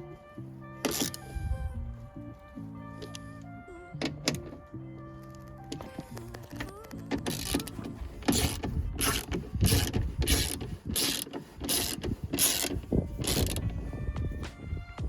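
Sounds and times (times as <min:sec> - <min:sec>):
ratchet tool clicking: 0:00.9 - 0:01.2, 0:05.7 - 0:13.7.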